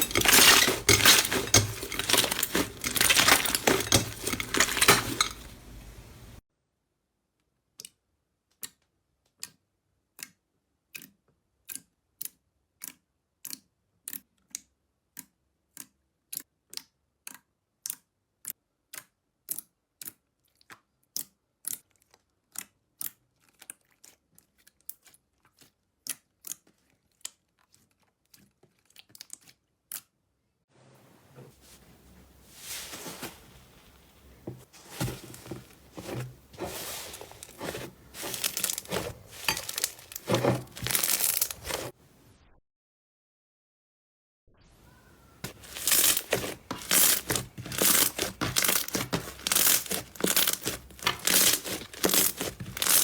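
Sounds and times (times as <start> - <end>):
crunchy slime crinkling: 0.0 - 6.4, 31.6 - 42.0, 45.3 - 53.0.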